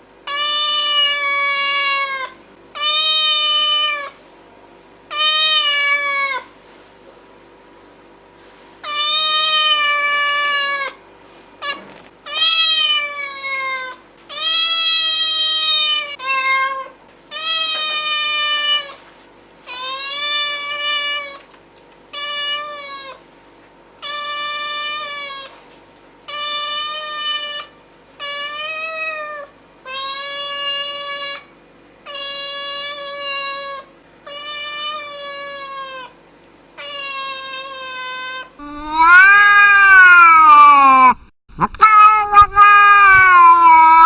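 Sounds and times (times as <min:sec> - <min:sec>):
cat meowing loudly: 0:05.1 - 0:06.5, 0:08.8 - 0:11.0, 0:11.6 - 0:19.0, 0:36.8 - 0:44.0.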